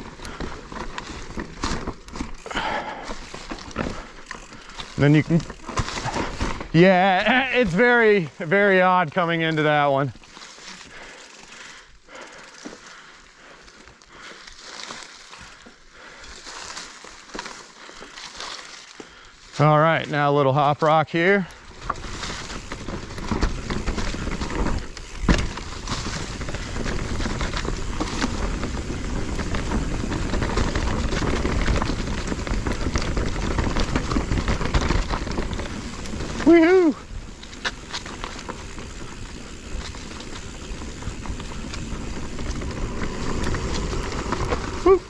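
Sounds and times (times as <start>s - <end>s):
tyres crunching over stones: 0.0s - 13.0s, 13.8s - 45.0s
bike rattling: 0.0s - 45.0s
bike knocking on rock: 21.8s - 36.4s
wind rumble: 21.8s - 45.0s.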